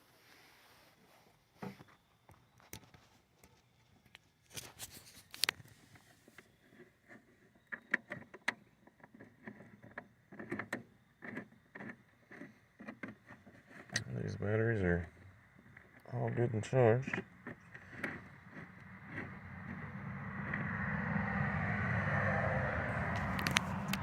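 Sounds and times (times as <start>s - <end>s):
battery cables clicking and rustling: 1.9s - 14.2s.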